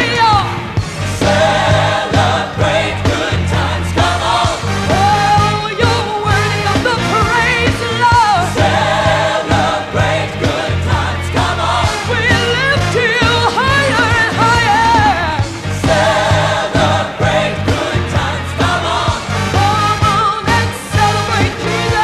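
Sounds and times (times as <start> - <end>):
band with bass and drums: 0.0 - 22.0
choir singing: 0.0 - 22.0.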